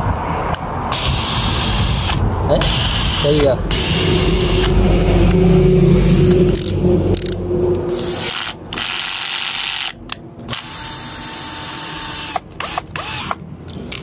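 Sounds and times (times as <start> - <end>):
cordless drill motor whirring: 0.9 - 4.6, 8.0 - 13.4.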